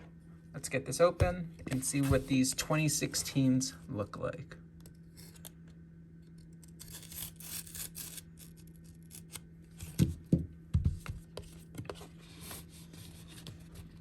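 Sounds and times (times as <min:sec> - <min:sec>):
dull thumps: 0:01.2 - 0:02.5
cardboard box rustling and scraping: 0:01.7 - 0:02.4.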